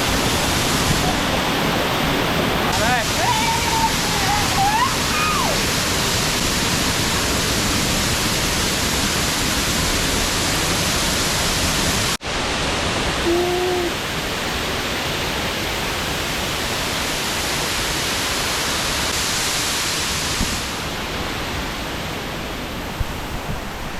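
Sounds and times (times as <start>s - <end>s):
waterfall pouring: 0.0s - 15.2s.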